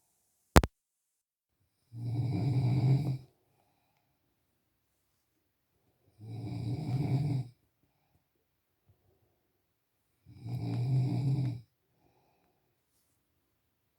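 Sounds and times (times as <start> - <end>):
faint soft breath: 12.0 - 13.2.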